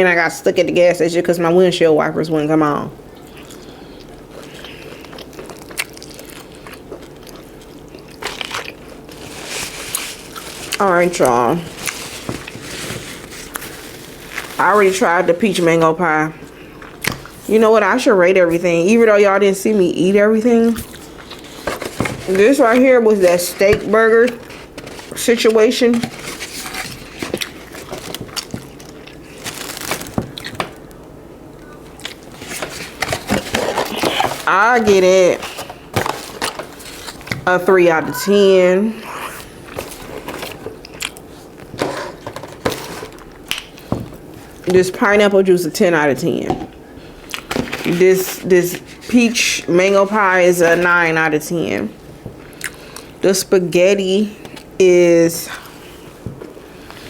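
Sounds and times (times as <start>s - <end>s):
person chewing crunchy food: 3.2s - 10.8s, 26.8s - 31.0s, 39.0s - 41.6s
food packaging crinkling: 3.4s - 15.8s, 20.6s - 31.1s, 31.8s - 37.5s.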